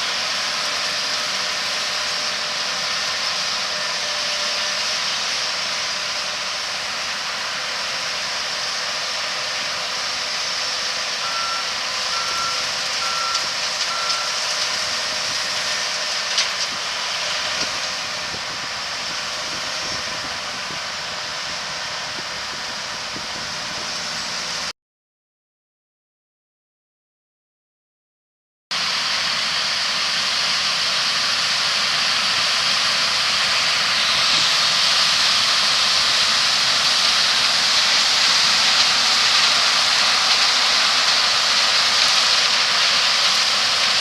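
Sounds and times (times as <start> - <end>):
harvesting machinery running: 0.0 - 24.7, 28.8 - 44.0
backup alarm beeping: 11.2 - 14.4.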